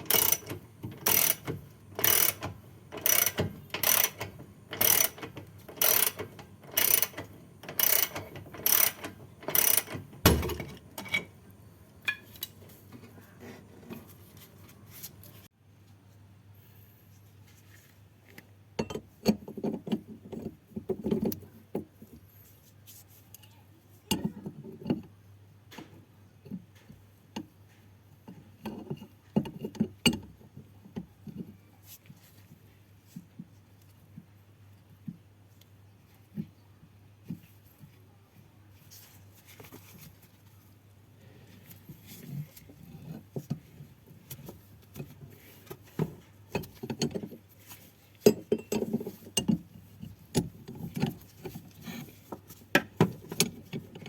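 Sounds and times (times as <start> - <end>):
ratchet wrench clicking: 0.0 - 10.7
metal tools clanking: 0.0 - 11.4.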